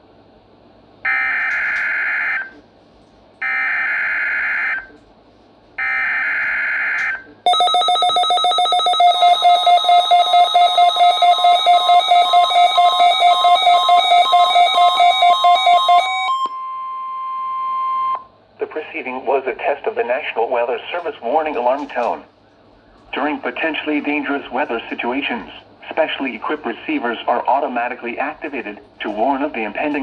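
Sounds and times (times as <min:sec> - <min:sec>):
fast-pulsing electronic alarm: 0:01.1 - 0:02.5, 0:03.4 - 0:04.9, 0:05.8 - 0:16.5
steady warning alarm tone: 0:01.1 - 0:02.6, 0:03.4 - 0:05.0, 0:05.8 - 0:18.3.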